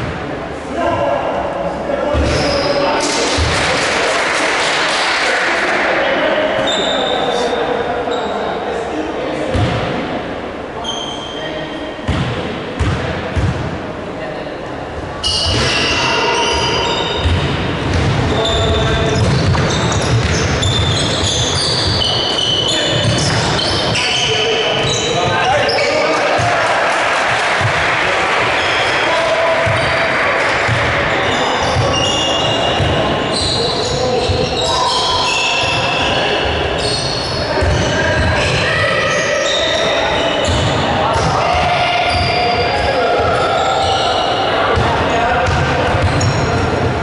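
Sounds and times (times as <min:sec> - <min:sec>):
sneakers squeaking on hardwood: 0:02.2 - 0:03.0, 0:15.2 - 0:26.5, 0:28.4 - 0:47.0
basketball bouncing: 0:09.5 - 0:09.9, 0:12.1 - 0:13.7, 0:17.2 - 0:22.0, 0:22.9 - 0:25.5, 0:29.6 - 0:29.9, 0:30.5 - 0:31.1, 0:44.8 - 0:47.0.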